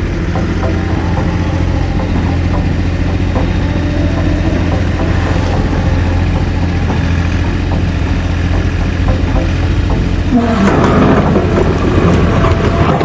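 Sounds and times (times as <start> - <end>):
diesel engine humming: 0.0 - 13.0.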